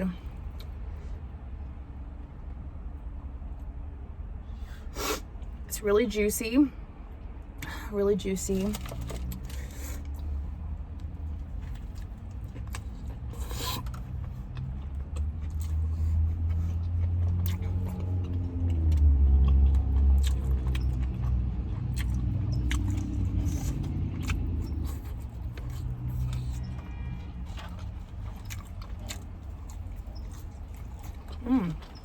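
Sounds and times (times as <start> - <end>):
low steady rumble: 0.0 - 32.0
close chewing and biting: 8.5 - 32.0.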